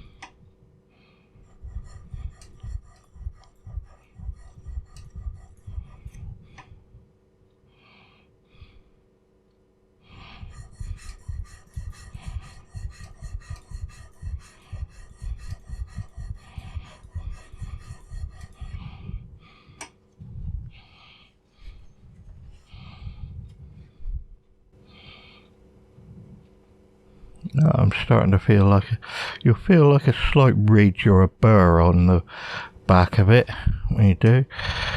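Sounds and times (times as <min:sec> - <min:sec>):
chisel scraping on sharpening stone: 0:01.8 - 0:05.7, 0:10.5 - 0:18.6.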